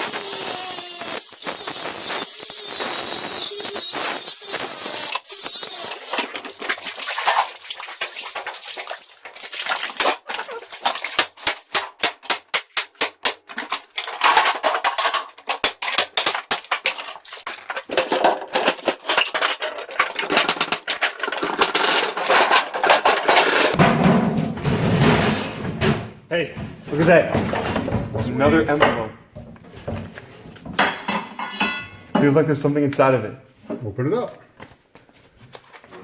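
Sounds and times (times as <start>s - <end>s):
regular knocks: 23.8s - 32.4s.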